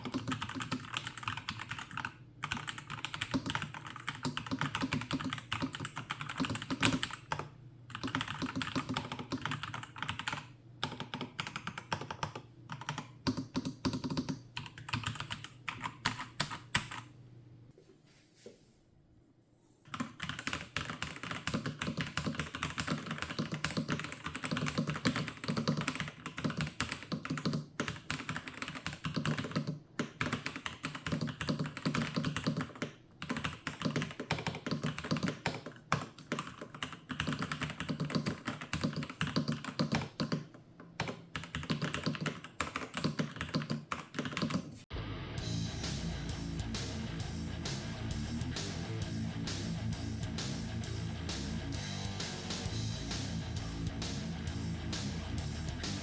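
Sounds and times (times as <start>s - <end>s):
mechanical keyboard typing: 0.0s - 17.1s, 19.9s - 44.7s.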